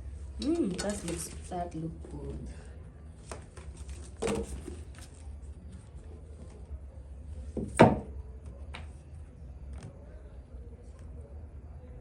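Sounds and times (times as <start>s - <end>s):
low steady hum: 0.0s - 12.0s
objects knocking on a table: 7.6s - 8.1s.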